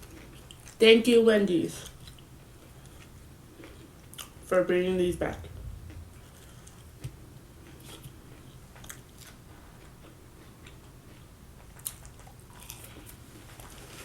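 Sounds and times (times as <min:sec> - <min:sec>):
person chewing crunchy food: 0:08.8 - 0:14.0.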